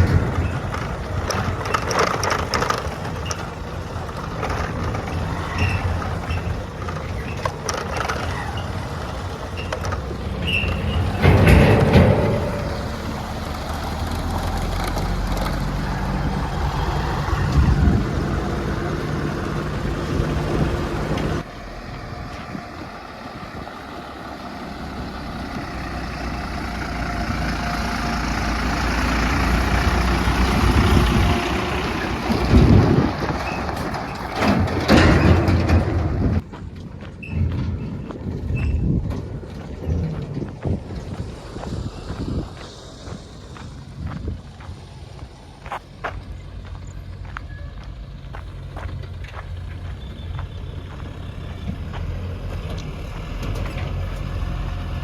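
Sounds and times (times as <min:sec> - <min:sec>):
loud knocks and clatters: 0:00.0 - 0:15.9, 0:32.0 - 0:36.6
heavy diesel machinery running: 0:00.0 - 0:55.0.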